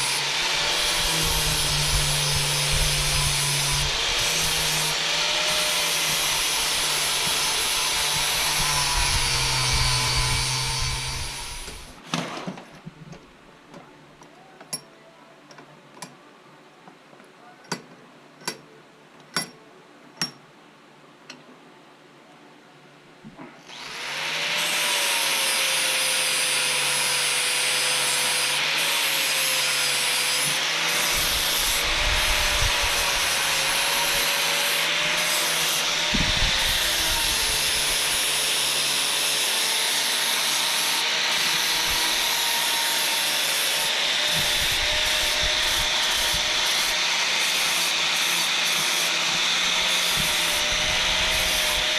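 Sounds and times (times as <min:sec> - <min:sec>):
electric power tool grinding: 0:00.0 - 0:12.0, 0:23.7 - 0:51.9.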